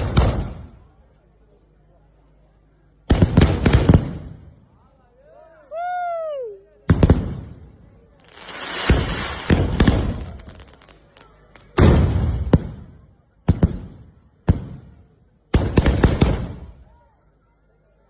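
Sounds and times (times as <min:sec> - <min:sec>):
firework bangs: 0:00.0 - 0:00.9, 0:03.0 - 0:04.6, 0:06.9 - 0:16.9
crackling rumble of shell bursts: 0:08.2 - 0:12.7.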